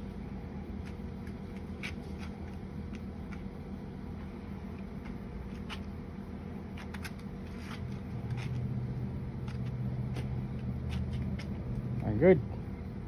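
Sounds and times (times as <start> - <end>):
steady low hum: 0.0 - 13.0
rope rustling and scraping: 0.8 - 3.5, 4.2 - 6.0, 6.7 - 12.1.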